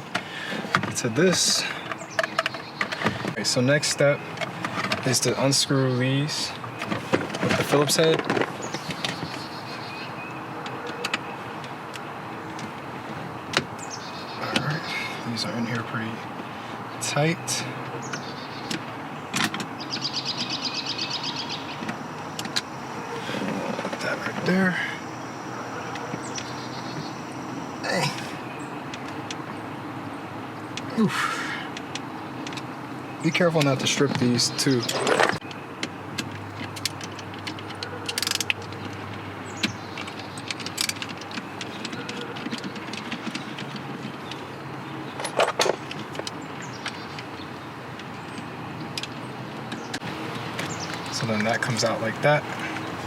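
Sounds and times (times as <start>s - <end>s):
rustles: 33.8s - 47.3s.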